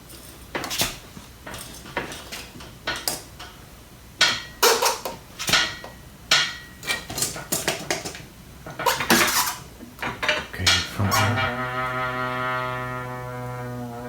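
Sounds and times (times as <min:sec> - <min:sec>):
metallic knocks and clanks: 0:00.0 - 0:03.6, 0:04.2 - 0:11.6.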